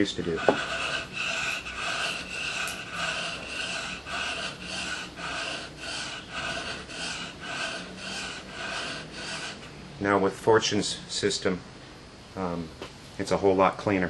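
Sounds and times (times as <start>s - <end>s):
chisel scraping on sharpening stone: 0.0s - 9.7s.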